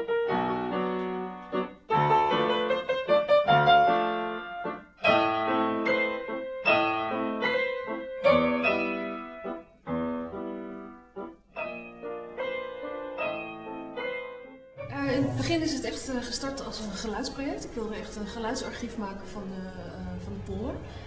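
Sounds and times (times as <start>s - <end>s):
piano playing chords: 0.0s - 16.8s.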